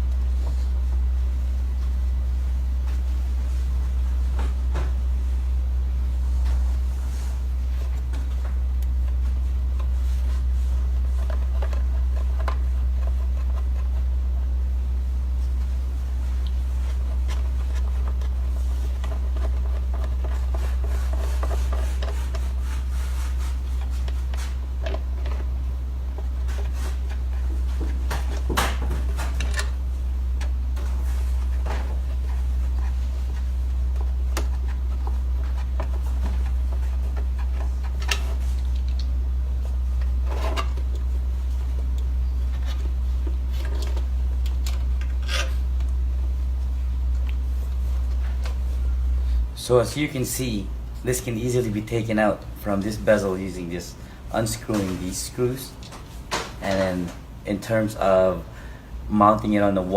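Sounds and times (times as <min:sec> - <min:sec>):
low electrical hum: 0:00.0 - 0:59.9.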